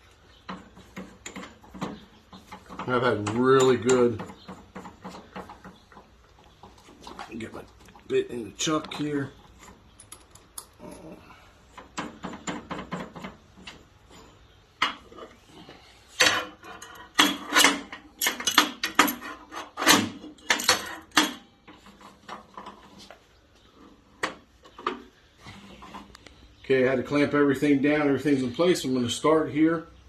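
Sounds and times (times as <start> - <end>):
metal parts clanking and rattling: 8.6 - 11.2, 11.8 - 15.4, 16.2 - 23.0.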